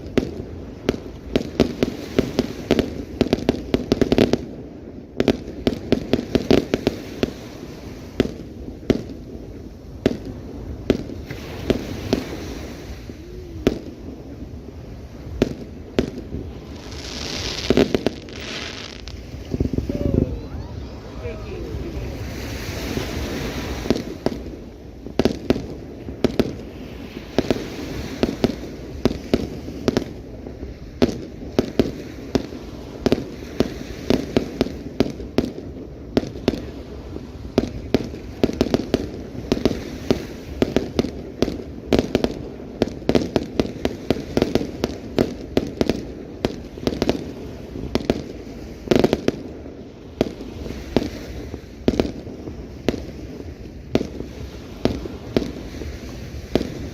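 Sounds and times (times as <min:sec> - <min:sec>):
fireworks bangs and pops: 0:00.0 - 0:56.9.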